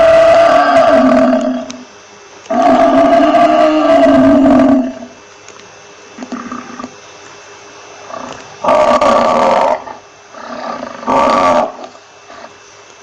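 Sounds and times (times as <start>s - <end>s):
buffalo bellowing: 8.1s - 12.6s.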